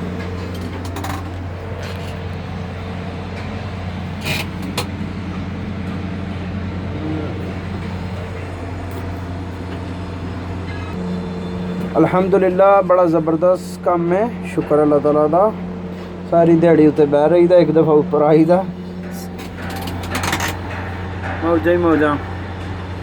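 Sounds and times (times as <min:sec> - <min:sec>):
electric machinery hum: 0:00.0 - 0:23.0.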